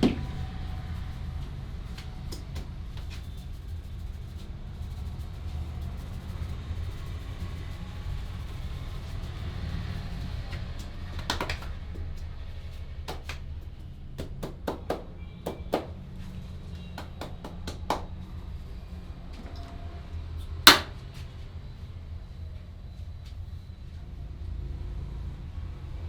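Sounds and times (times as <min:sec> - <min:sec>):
hands slapping and snapping: 0:11.2 - 0:12.0, 0:13.1 - 0:13.5, 0:14.2 - 0:16.0, 0:17.0 - 0:18.2, 0:20.7 - 0:21.0.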